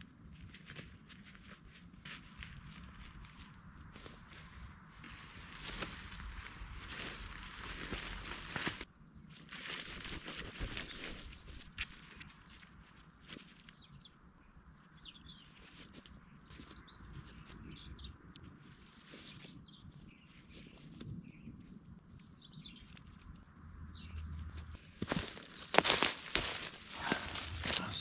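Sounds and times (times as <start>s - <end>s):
birds chirping: 13.7s - 15.6s, 16.2s - 28.0s
faint rustling: 24.2s - 28.0s.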